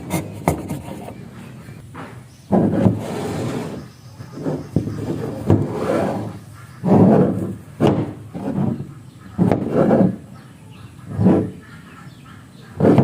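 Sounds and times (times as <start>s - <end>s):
scraping wood by hand: 0.0s - 12.0s, 12.6s - 13.0s
sharp knocks: 6.8s - 10.2s.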